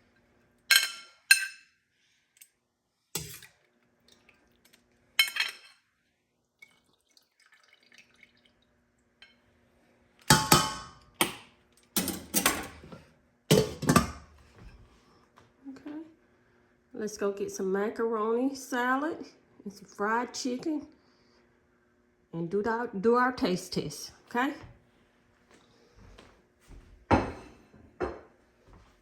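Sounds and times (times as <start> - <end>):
dishes and utensils clinking: 0.7 - 1.7, 5.2 - 5.8, 12.0 - 14.3.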